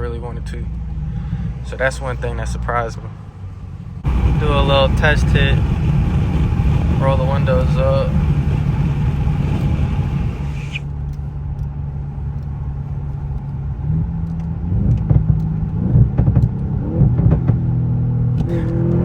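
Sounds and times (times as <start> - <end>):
car engine idling and revving: 0.0 - 19.0
outside hiss: 4.0 - 10.9
exhaust pops and crackles: 4.0 - 11.3, 14.2 - 17.7.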